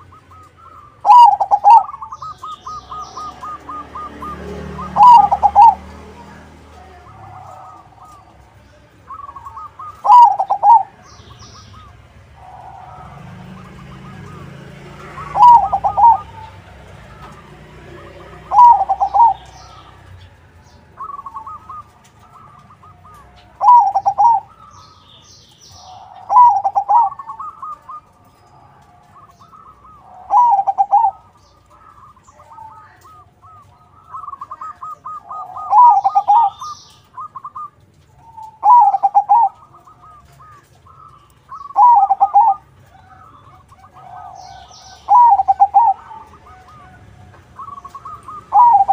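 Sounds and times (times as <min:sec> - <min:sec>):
dove cooing: 0:00.0 - 0:48.9
small birds chirping: 0:00.0 - 0:48.9.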